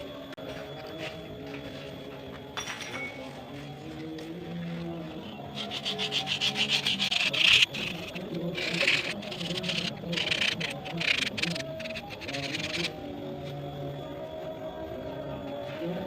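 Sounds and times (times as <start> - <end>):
scraping over a hard surface: 5.5 - 13.0.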